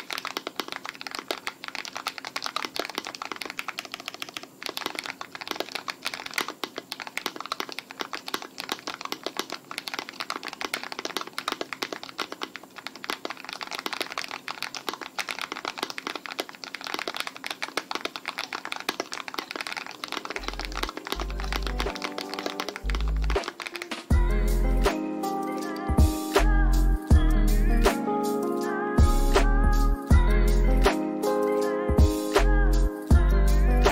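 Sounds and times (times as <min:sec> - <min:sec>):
mechanical keyboard typing: 0:00.0 - 0:24.3
low bass music: 0:20.4 - 0:21.9, 0:22.9 - 0:23.4, 0:24.1 - 0:24.9, 0:26.0 - 0:27.9, 0:29.0 - 0:30.9, 0:32.4 - 0:33.9.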